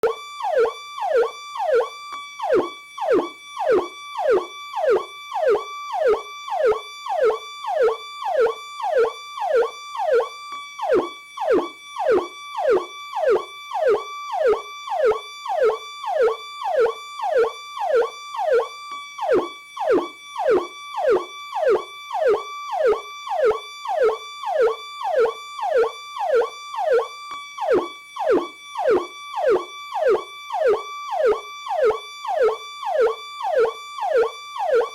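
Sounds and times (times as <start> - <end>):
electronic police siren: 0.0 - 34.9.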